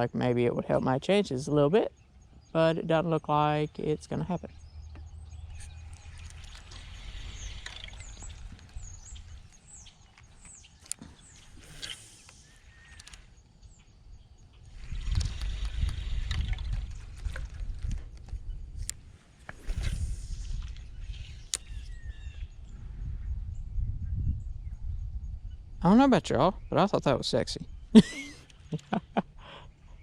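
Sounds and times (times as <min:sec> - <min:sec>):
birds chirping: 0:00.0 - 0:22.8, 0:23.5 - 0:30.0
creek ambience: 0:01.1 - 0:14.0
rustling rumbling noise: 0:04.4 - 0:12.6, 0:14.7 - 0:24.1.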